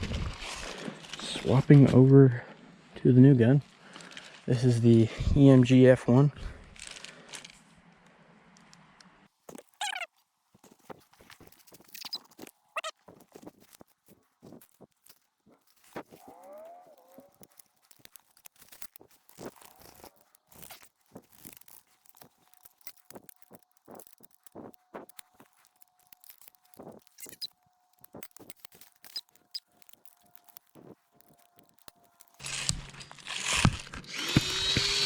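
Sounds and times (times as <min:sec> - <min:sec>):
footsteps through leaf litter: 0:10.6 - 0:35.0.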